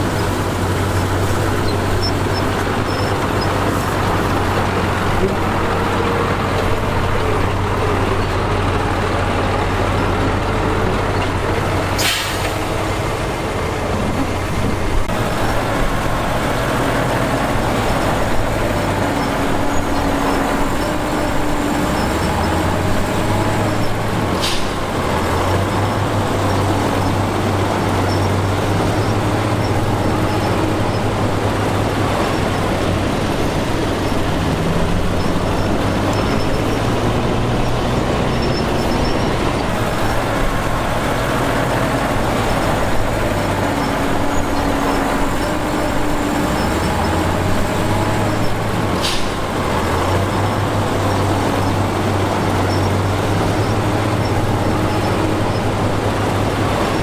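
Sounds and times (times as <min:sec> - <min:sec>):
diesel construction machinery running: 0:00.0 - 0:57.0.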